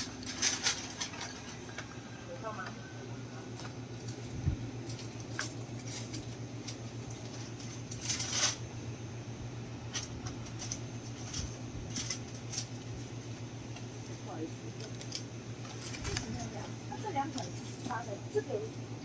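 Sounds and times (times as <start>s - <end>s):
clicks and rustles of handling: 0.0s - 2.8s, 3.5s - 8.7s, 9.9s - 18.4s
low steady hum: 0.0s - 19.0s.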